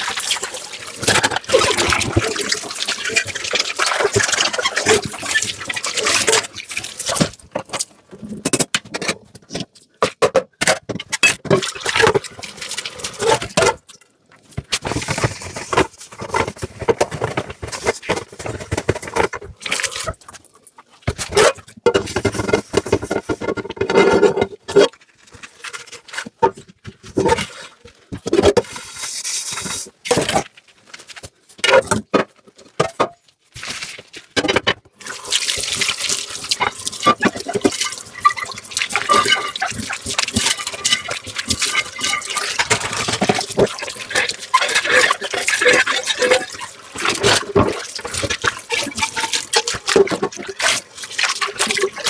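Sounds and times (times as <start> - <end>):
water splashing and running: 0.0 - 7.8, 11.6 - 13.7, 35.0 - 52.0
dishes and utensils clinking: 36.6 - 47.8.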